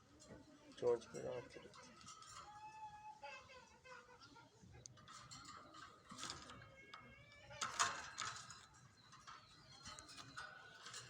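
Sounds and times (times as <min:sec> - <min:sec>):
caged birds calling: 0:07.6 - 0:11.0.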